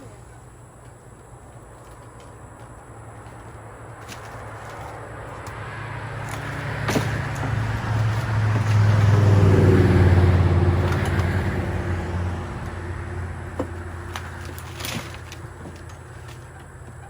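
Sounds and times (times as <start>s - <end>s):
vehicle engine passing by: 3.8s - 15.6s.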